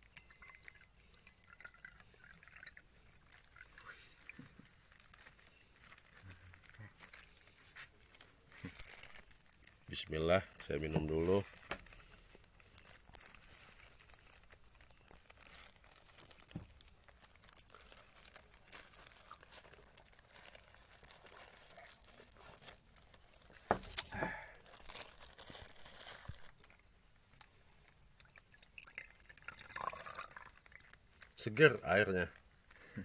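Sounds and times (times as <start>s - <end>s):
person sipping and swallowing: 0.2s - 4.6s, 23.8s - 24.8s, 28.2s - 30.8s.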